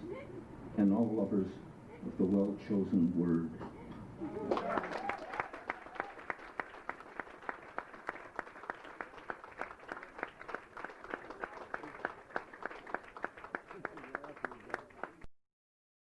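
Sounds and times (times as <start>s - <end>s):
audience applauding: 4.2s - 15.3s
close distinct claps: 4.5s - 15.2s.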